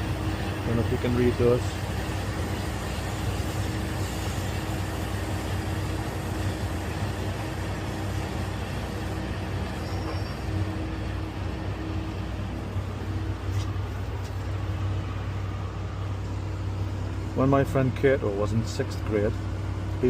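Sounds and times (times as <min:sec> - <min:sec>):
city background hum: 0:00.0 - 0:20.0.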